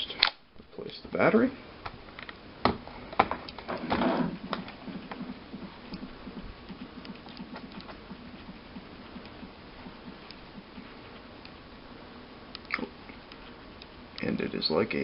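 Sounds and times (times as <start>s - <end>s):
faint rapid light ticking: 5.9s - 10.8s.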